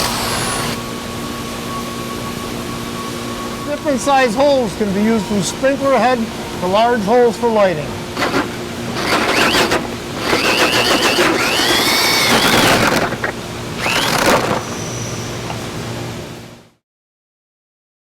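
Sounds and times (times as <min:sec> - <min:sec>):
electric drill with hole saw: 0:00.0 - 0:00.8, 0:08.2 - 0:15.1.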